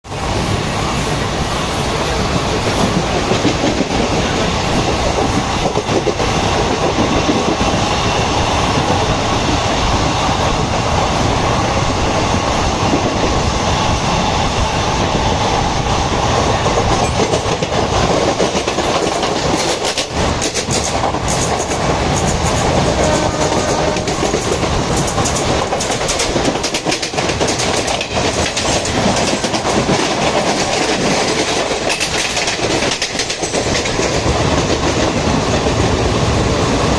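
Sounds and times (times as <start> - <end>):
train rumble: 0.0 - 36.9
wheels clacking over rail joints: 2.1 - 7.9, 16.4 - 36.9.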